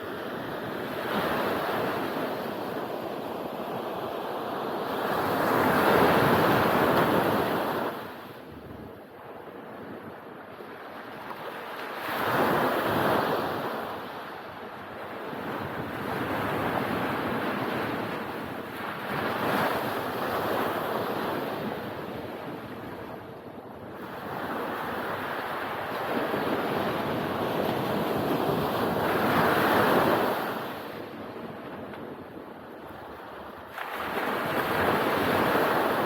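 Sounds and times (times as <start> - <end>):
ocean surf breaking on beach: 31.8 - 36.0.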